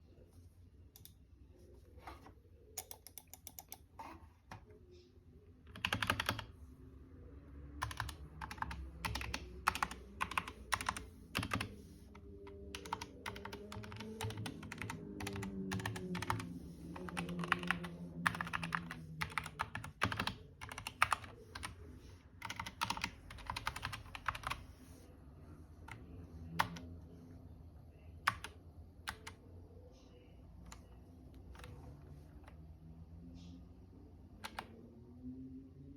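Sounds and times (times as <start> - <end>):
keyboard typing: 2.7 - 4.6, 5.7 - 6.6, 7.8 - 25.0, 26.6 - 26.9, 28.2 - 29.4, 34.4 - 34.8.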